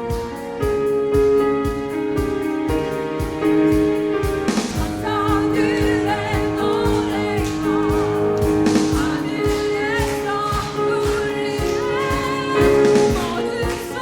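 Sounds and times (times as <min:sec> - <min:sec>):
steady beat: 0:00.0 - 0:14.0
sustained keyboard chords: 0:00.0 - 0:14.0
vocal ensemble singing a hymn: 0:04.6 - 0:14.0.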